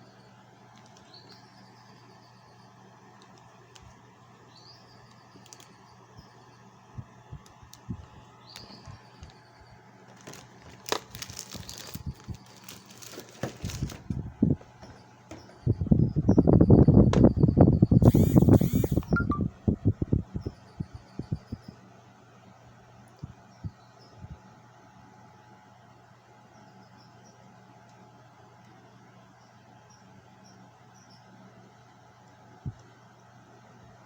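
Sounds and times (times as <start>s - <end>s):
steady low hum: 0.0s - 34.0s
plastic packaging crackling: 0.7s - 1.2s, 5.0s - 5.8s, 10.0s - 15.0s
faint high chirps: 14.9s - 19.5s.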